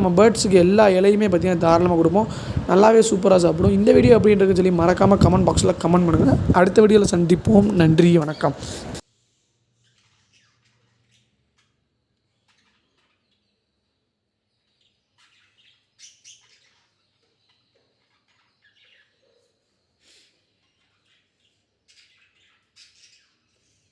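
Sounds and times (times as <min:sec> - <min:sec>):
lovebirds chirping: 0:00.0 - 0:09.0.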